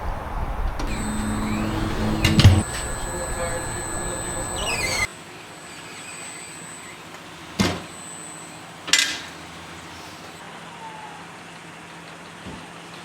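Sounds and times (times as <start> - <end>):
steady low hum: 0.8 - 5.1.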